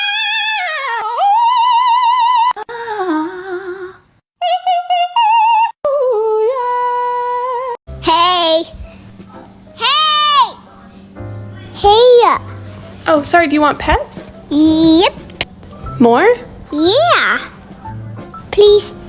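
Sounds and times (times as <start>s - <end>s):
high sung voice: 0.0s - 8.8s, 9.8s - 10.6s.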